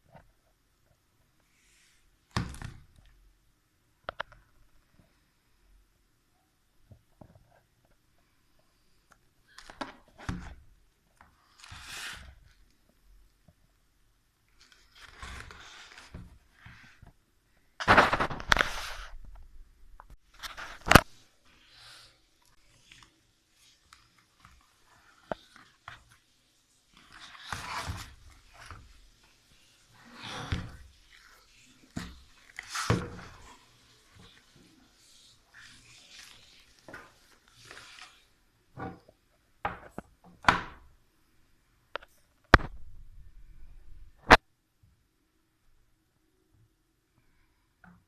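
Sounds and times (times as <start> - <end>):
packaging rustling scrape: 17.8 - 19.2.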